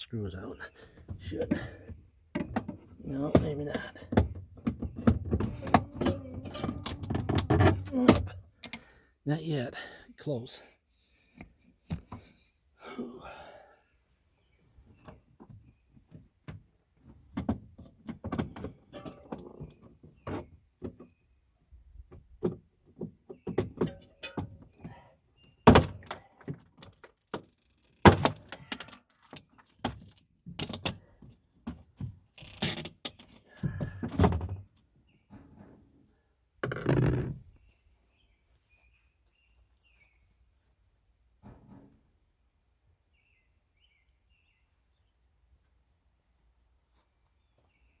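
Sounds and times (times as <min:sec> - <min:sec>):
plastic panels knocking and clicking: 0:01.1 - 0:08.4, 0:17.3 - 0:21.1, 0:22.1 - 0:24.7, 0:25.6 - 0:27.5, 0:28.1 - 0:31.0.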